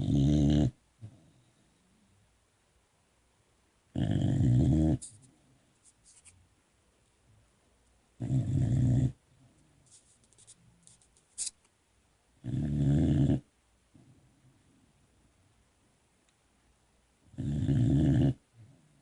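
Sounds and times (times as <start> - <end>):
puppy snoring: 0.0 - 1.2, 3.9 - 5.2, 8.2 - 9.2, 12.4 - 13.5, 17.3 - 18.5.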